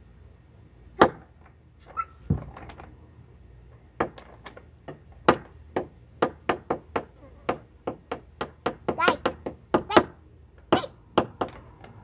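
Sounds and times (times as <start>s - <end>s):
sharp knocks on hard surface: 2.3s - 2.6s, 4.0s - 12.0s.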